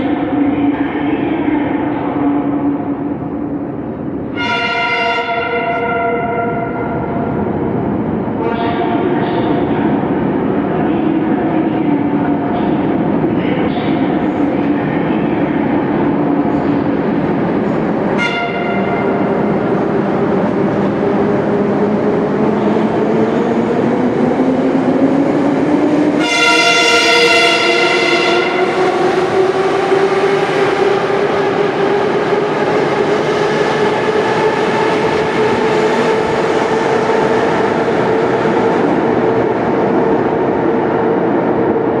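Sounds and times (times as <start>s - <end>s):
train running and wheel noise: 0.0s - 42.0s
train horn: 4.3s - 7.1s, 18.2s - 19.0s, 26.2s - 29.0s.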